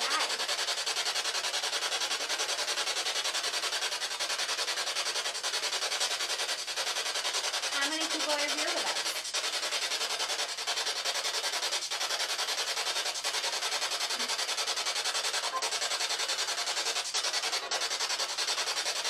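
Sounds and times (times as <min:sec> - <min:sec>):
chopped radio static hiss: 0:00.0 - 0:00.4, 0:07.7 - 0:09.3, 0:15.2 - 0:15.8.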